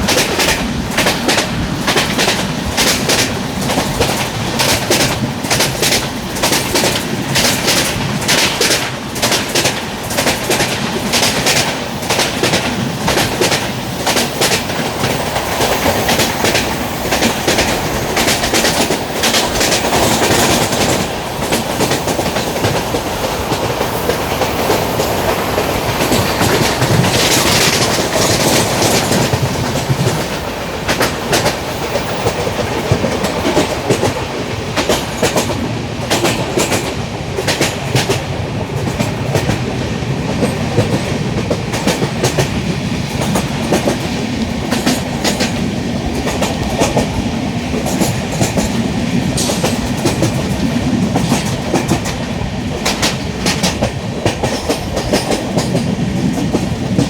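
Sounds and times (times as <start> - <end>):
train wheels rumbling on rails: 0.0 - 57.0
wheels clicking over rail joints: 0.0 - 57.0.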